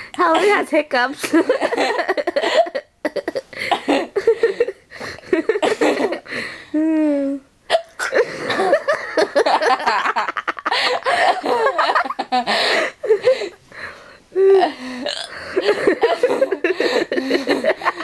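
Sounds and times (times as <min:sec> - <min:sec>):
woman hiccuping: 0:07.1 - 0:08.2
woman laughing: 0:08.2 - 0:13.5, 0:15.6 - 0:18.0.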